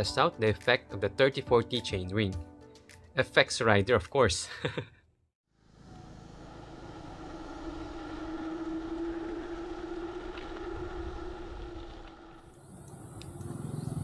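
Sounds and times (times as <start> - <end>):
motor hum: 5.6 - 14.0
road noise: 5.6 - 14.0.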